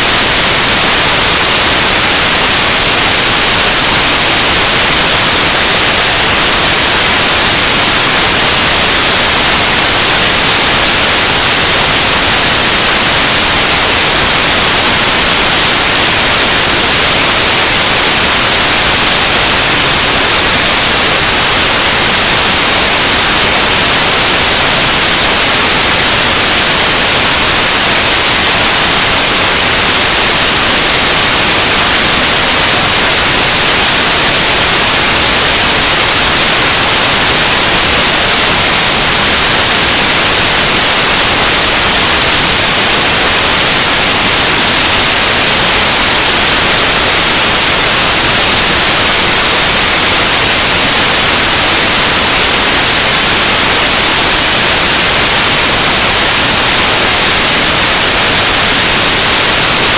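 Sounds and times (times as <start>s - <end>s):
loud static hiss: 0.0s - 59.9s.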